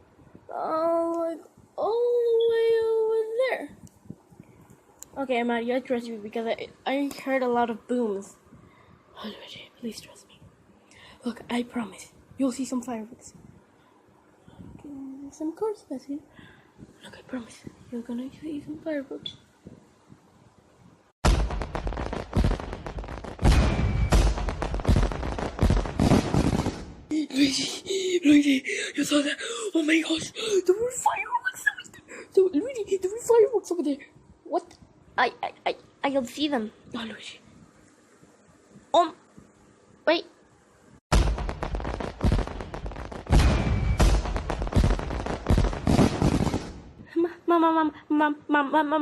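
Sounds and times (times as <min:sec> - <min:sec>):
fireworks bangs: 0:21.2 - 0:27.1, 0:41.1 - 0:47.1
fireworks crackling: 0:21.2 - 0:27.1, 0:41.1 - 0:47.1.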